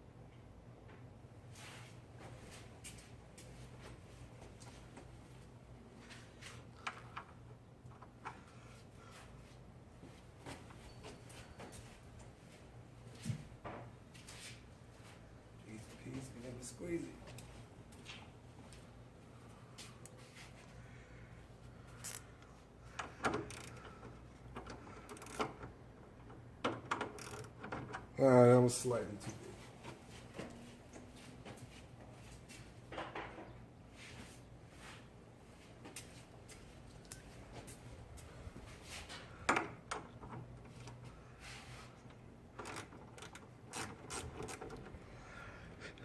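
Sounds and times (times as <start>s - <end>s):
clicks and knocks of parts handled: 22.0s - 28.2s.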